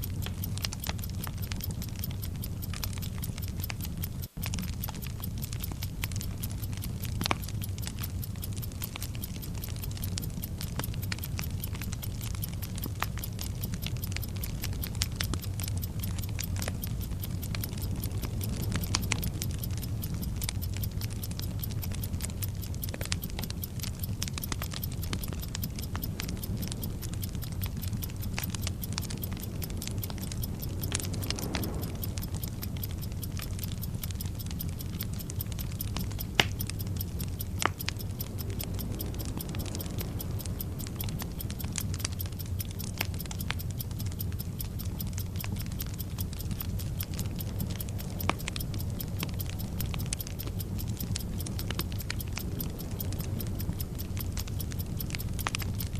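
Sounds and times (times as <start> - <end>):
burning fuse crackling: 0.0 - 55.9
clock ticking: 0.0 - 55.9
low rumble: 13.4 - 44.2.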